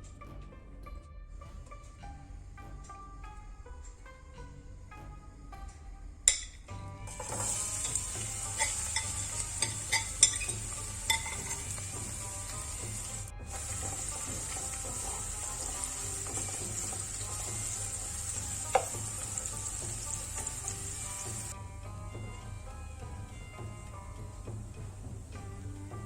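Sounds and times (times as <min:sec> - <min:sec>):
utensil clicking against pot: 0:06.3 - 0:12.2, 0:13.6 - 0:20.7
food sizzling in oil: 0:07.1 - 0:21.6.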